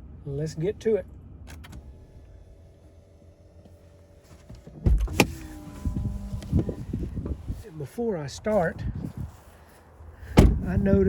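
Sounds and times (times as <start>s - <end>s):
truck door latch clunk: 4.6s - 5.5s, 10.4s - 10.7s
electric motor whine: 5.1s - 7.3s.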